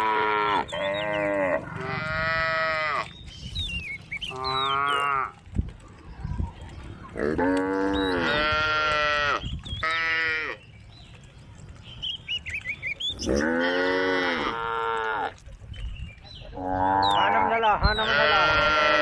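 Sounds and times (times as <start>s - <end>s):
cows mooing: 0.0s - 3.2s, 4.3s - 5.4s, 7.1s - 10.6s, 13.2s - 15.4s, 16.5s - 19.0s.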